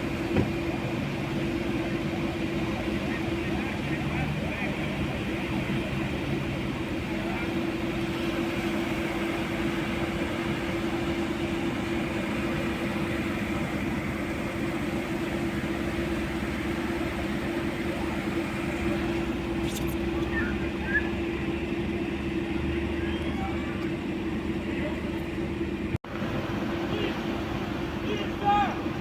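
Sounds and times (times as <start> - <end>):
road noise: 0.0 - 29.0
road vehicle humming: 0.0 - 29.0.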